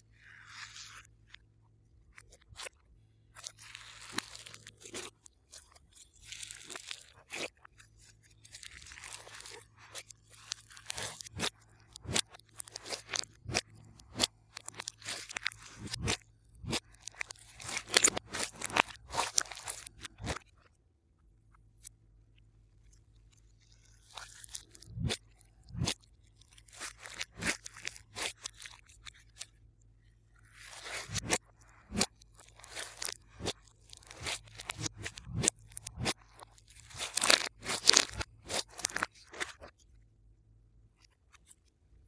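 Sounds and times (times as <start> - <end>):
slime crackling: 3.3 - 20.5, 23.6 - 29.5, 30.5 - 39.7.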